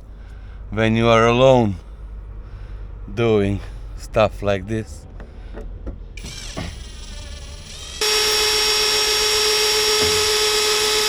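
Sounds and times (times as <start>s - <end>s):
power drill running: 6.2s - 11.0s.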